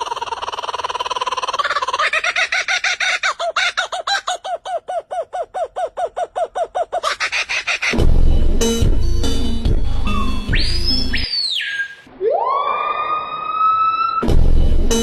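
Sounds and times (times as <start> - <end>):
bird calling rapid notes: 10.0 - 12.1.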